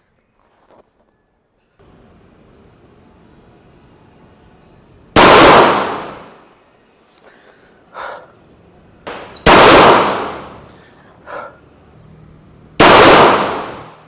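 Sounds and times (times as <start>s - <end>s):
pistol shots: 5.2s - 6.4s, 9.1s - 10.7s, 12.8s - 14.0s.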